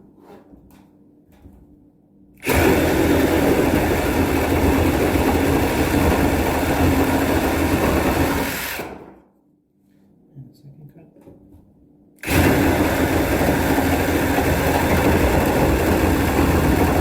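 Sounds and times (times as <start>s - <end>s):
reciprocating saw cutting wood: 2.4s - 9.0s, 12.2s - 17.0s.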